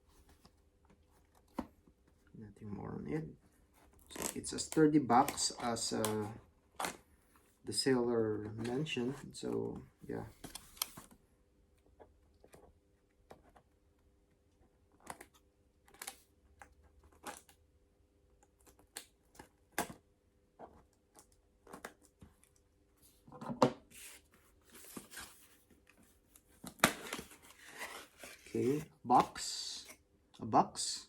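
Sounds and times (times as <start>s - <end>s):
cardboard rustling: 20.6s - 29.4s.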